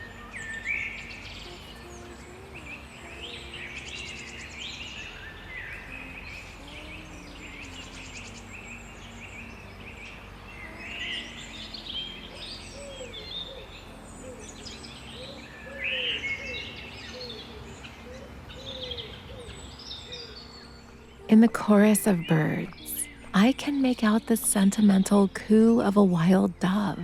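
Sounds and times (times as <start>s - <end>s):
songbirds chirping and trilling: 0.0s - 27.0s.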